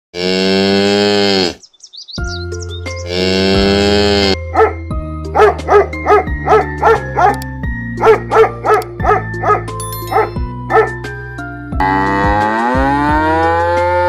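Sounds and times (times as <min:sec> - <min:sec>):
background music: 0:02.2 - 0:14.0
dog barking: 0:04.5 - 0:07.4, 0:08.0 - 0:11.0
cow mooing: 0:11.8 - 0:14.0.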